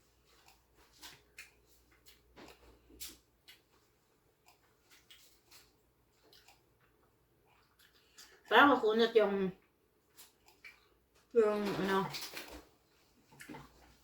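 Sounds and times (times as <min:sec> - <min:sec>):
person chewing noodles: 0:00.0 - 0:08.5, 0:09.6 - 0:11.3.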